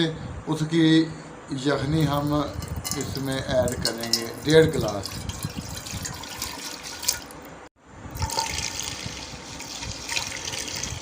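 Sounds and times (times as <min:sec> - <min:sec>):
liquid pouring into pot: 0:02.1 - 0:07.4, 0:08.2 - 0:11.0.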